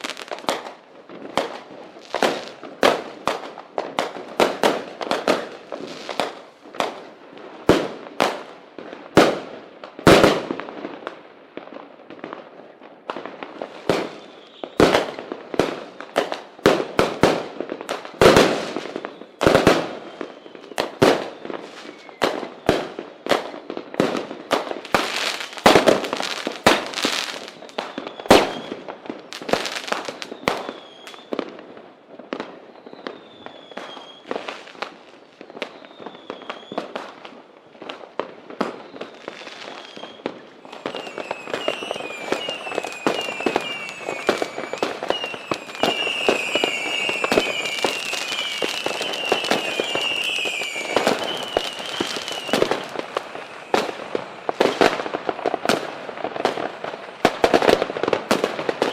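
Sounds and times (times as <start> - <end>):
fireworks bangs and crackling: 0.0 - 58.9
faint high whistle: 14.2 - 14.8, 20.0 - 22.3, 30.2 - 31.4, 32.7 - 34.4, 35.5 - 36.9, 38.8 - 53.8.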